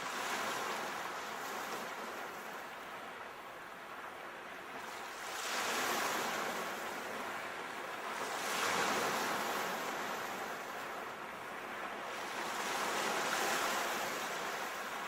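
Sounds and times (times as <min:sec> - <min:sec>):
waves breaking on shore: 0:00.0 - 0:15.0.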